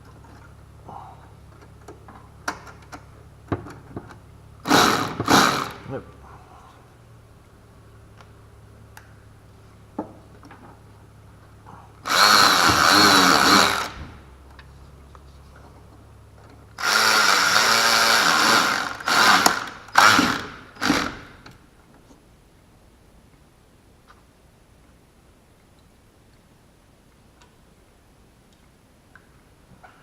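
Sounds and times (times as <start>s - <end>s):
power drill running: 4.6s - 5.8s, 12.0s - 14.1s, 16.8s - 21.4s.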